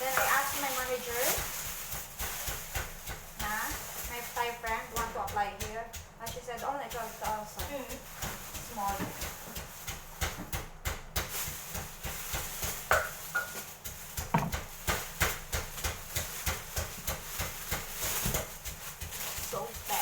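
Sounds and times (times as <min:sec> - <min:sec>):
sharp clicks and knocks: 0:14.2 - 0:15.3.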